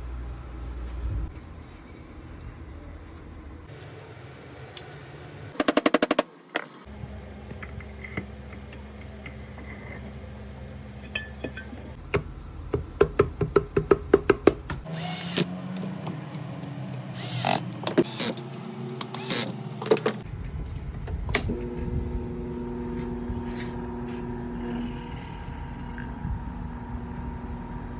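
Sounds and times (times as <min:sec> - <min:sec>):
fan motor humming: 0:06.9 - 0:27.9.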